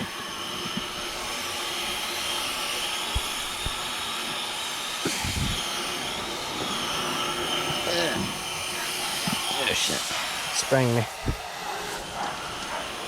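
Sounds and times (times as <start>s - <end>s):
garden hose spraying water: 0.0s - 13.0s.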